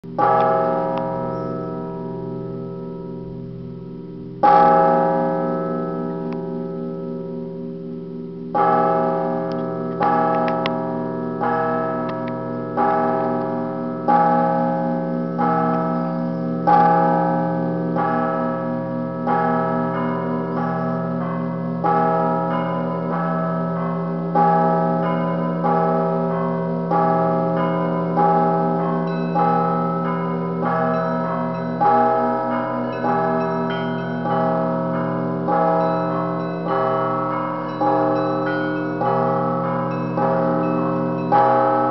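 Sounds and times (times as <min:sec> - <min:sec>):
low church bell ringing: 0:00.0 - 0:41.9
small bells struck together: 0:32.9 - 0:41.9.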